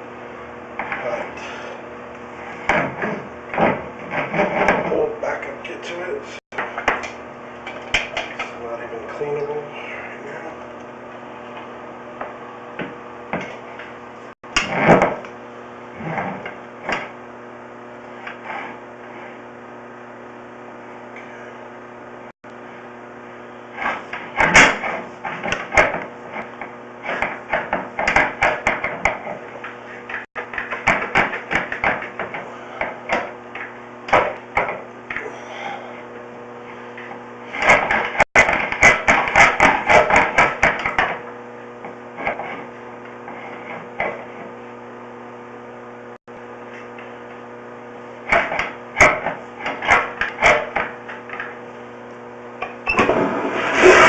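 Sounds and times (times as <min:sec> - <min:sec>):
steady electrical hum: 0:00.0 - 0:54.0.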